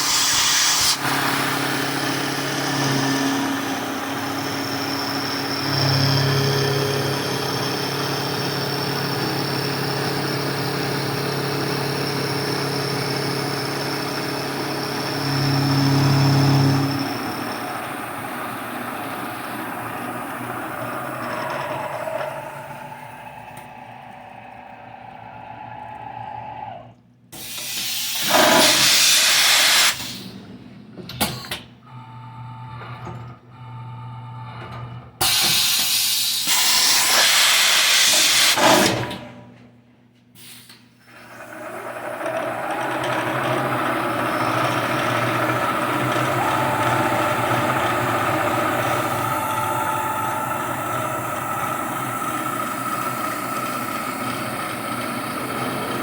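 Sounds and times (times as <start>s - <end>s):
compressed air hissing: 0.0s - 2.7s
milling spindle high whine: 0.0s - 27.2s, 41.6s - 56.0s.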